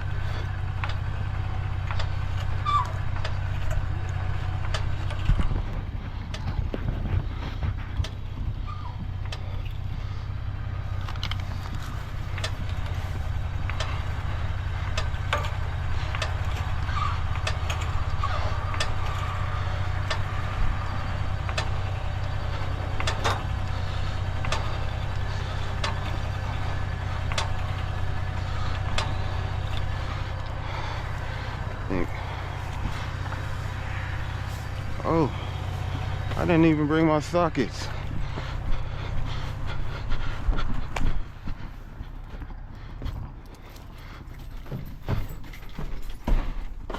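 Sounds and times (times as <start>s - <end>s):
road traffic rumble: 0.0s - 46.9s
sharp clicks and knocks: 0.3s - 9.9s, 11.0s - 36.4s.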